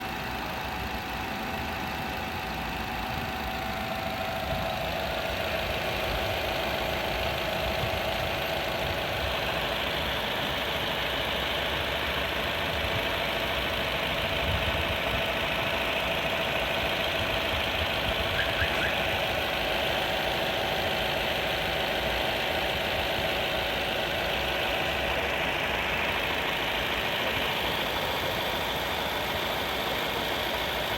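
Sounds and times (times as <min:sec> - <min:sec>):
petrol engine idling: 0:00.0 - 0:30.9.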